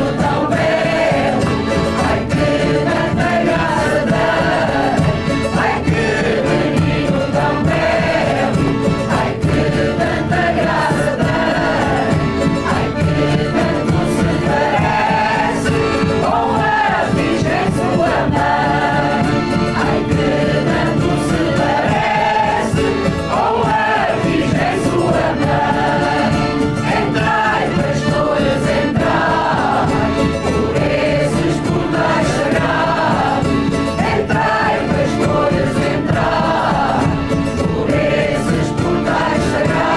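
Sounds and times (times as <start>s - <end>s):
choir singing: 0.0s - 39.9s.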